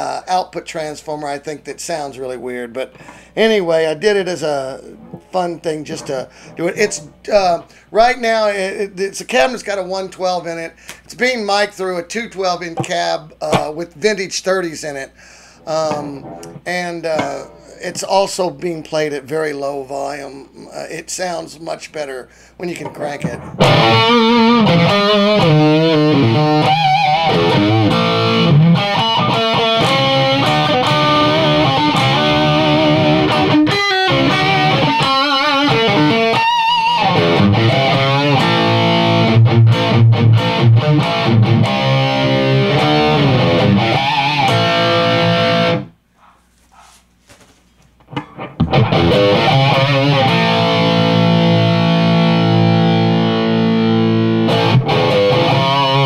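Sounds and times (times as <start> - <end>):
distorted electric guitar: 22.8 - 46.0, 48.1 - 56.0.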